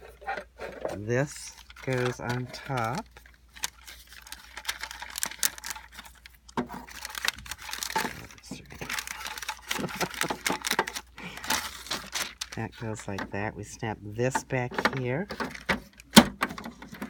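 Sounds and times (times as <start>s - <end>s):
plastic parts clicking: 0.0s - 13.3s
paper rustling: 0.0s - 17.0s.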